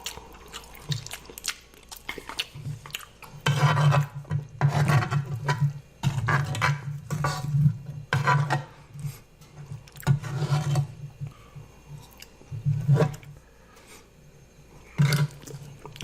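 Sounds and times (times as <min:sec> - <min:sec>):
wet chewing of noodles: 0:00.0 - 0:04.1.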